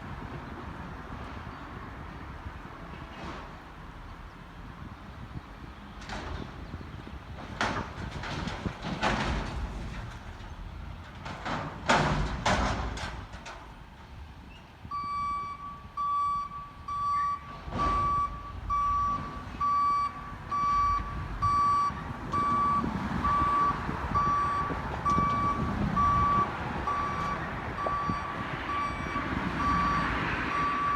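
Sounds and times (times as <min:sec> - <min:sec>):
clanks and bangs: 0:06.0 - 0:06.6, 0:07.4 - 0:13.8
truck backup alarm beeping: 0:14.8 - 0:30.9.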